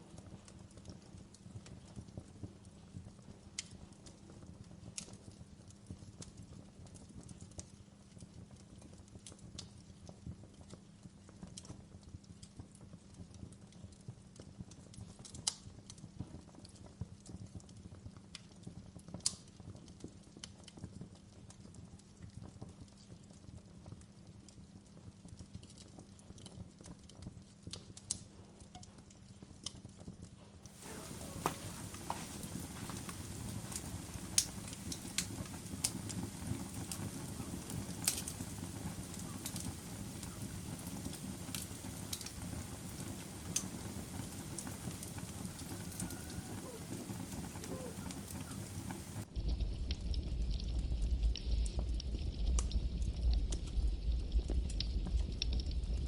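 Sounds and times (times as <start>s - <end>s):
campfire crackling: 0.1s - 10.8s, 30.7s - 56.0s
fire rumbling: 30.7s - 56.0s.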